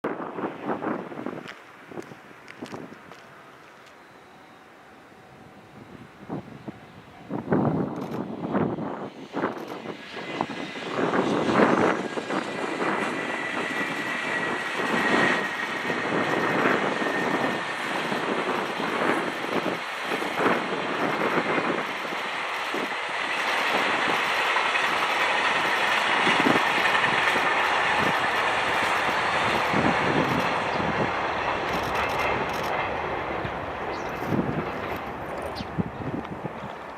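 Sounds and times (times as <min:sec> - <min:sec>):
train wheels rumbling on rails: 0:00.1 - 0:36.9
thin high whine: 0:03.3 - 0:08.3.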